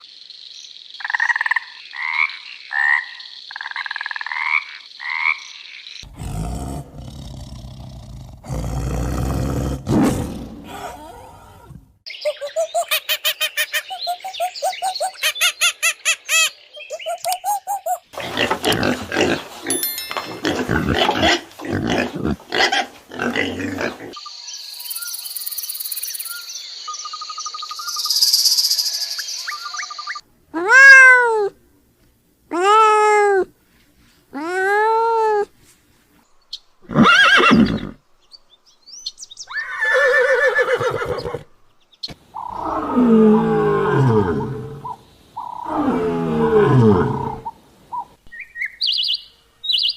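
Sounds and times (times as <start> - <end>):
high chirping: 24.2 - 30.2
rapid repeated animal calls: 42.3 - 43.7
harsh animal calls: 42.3 - 47.6.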